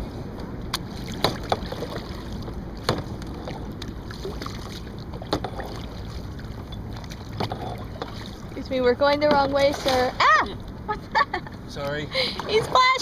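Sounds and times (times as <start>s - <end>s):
paddling water noise: 0.0s - 11.0s, 11.7s - 13.0s.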